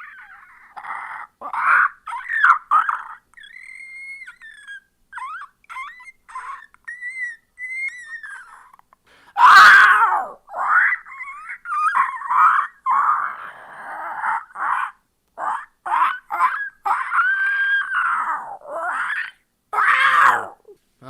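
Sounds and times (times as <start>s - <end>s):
person making squeaky calls: 0.0s - 9.6s.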